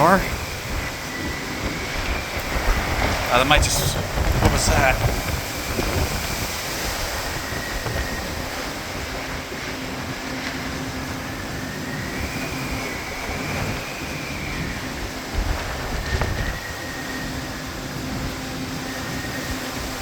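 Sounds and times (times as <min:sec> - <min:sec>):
storm wind rushing: 0:00.0 - 0:20.0
wind whistle: 0:00.0 - 0:20.0.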